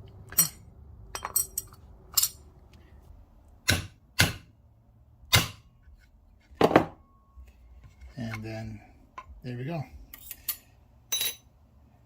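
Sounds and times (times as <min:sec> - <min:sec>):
small metal parts clinking: 0:00.2 - 0:02.5, 0:10.1 - 0:11.5.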